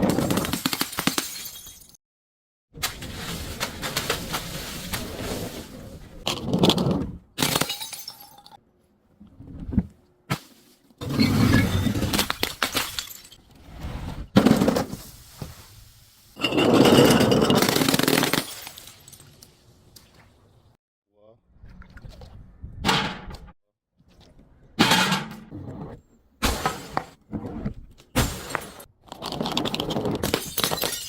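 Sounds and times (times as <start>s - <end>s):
glass bottles crushing: 7.4s - 8.6s, 11.2s - 13.4s, 16.4s - 19.4s, 28.3s - 31.0s
broken glass clinking: 30.4s - 31.0s.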